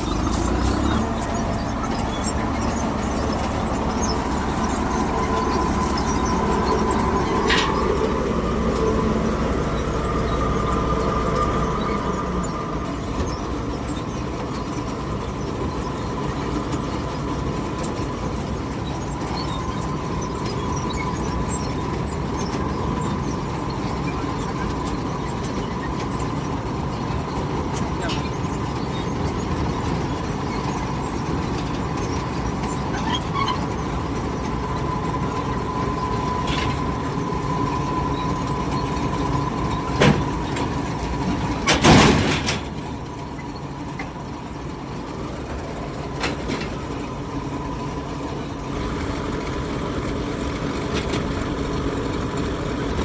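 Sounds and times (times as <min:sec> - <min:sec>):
short high squeak: 0:00.0 - 0:14.8, 0:27.6 - 0:44.1
combine harvester running: 0:00.0 - 0:53.0.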